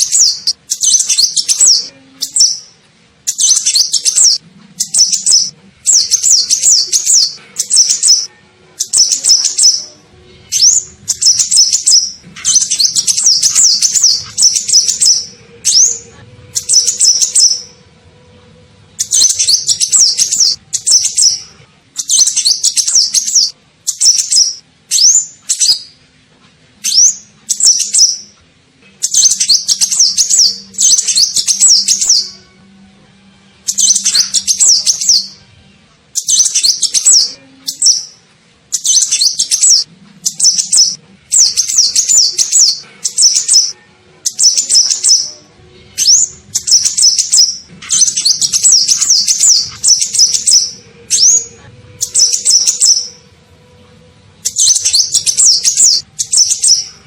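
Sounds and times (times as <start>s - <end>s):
high twittering bird chirps: 0.0s - 17.8s, 19.0s - 26.0s, 26.8s - 28.4s, 29.0s - 32.5s, 33.6s - 35.4s, 36.1s - 53.3s, 54.4s - 57.0s.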